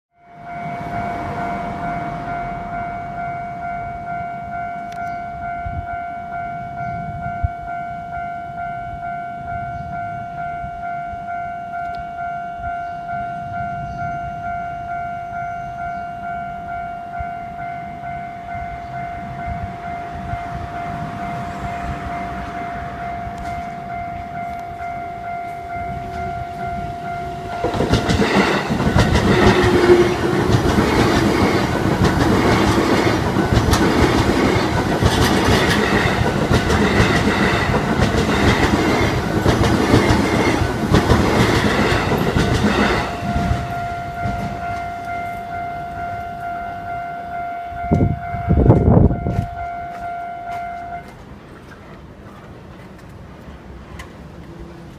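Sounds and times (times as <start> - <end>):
level crossing warning bell: 0.2 - 51.5
train wheels clattering: 27.4 - 45.4.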